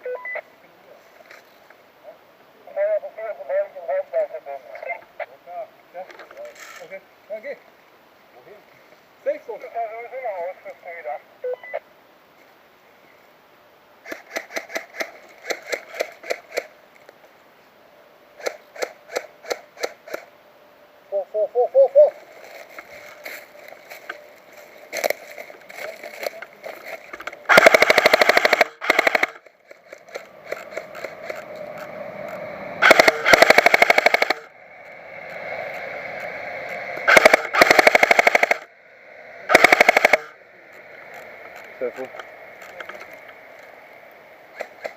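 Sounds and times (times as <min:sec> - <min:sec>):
full-auto bursts of rapid clicks: 0:14.1 - 0:16.7, 0:27.5 - 0:31.5, 0:32.8 - 0:34.5, 0:37.1 - 0:38.7, 0:39.5 - 0:40.3
airsoft gun shots: 0:27.5 - 0:29.4, 0:32.8 - 0:34.5, 0:37.1 - 0:38.7, 0:39.5 - 0:40.3.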